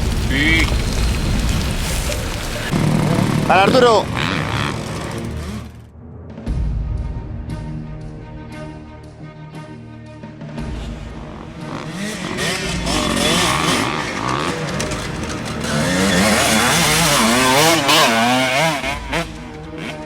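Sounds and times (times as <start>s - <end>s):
motocross bike engine revving: 0.0s - 5.8s, 10.6s - 20.0s.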